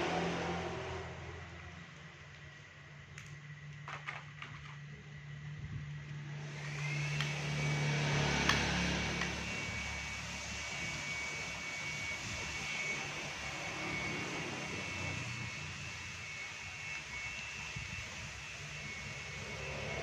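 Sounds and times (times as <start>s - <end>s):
small electric motor whine: 0.0s - 20.0s.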